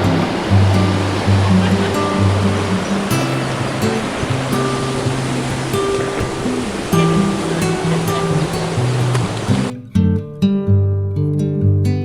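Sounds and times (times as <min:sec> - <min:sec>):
waterfall rushing: 0:00.0 - 0:09.7
music with slow bass notes: 0:07.0 - 0:12.0.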